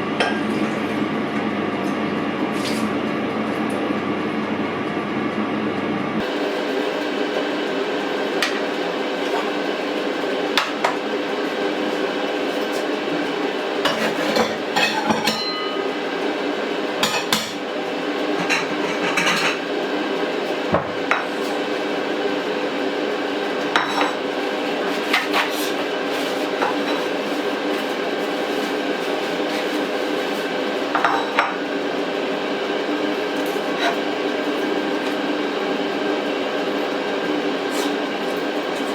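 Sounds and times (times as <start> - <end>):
kitchen utensils clinking: 13.8 - 15.9, 17.0 - 17.6, 18.3 - 19.6.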